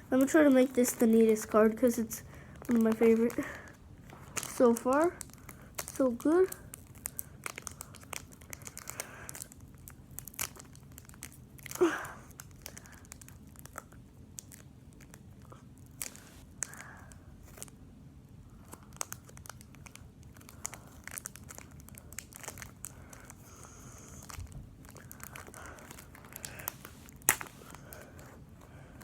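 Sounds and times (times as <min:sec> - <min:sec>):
foil wrapper crinkling: 0:00.1 - 0:16.8, 0:18.6 - 0:28.3
foil wrapper tearing: 0:04.2 - 0:15.2, 0:18.7 - 0:28.3.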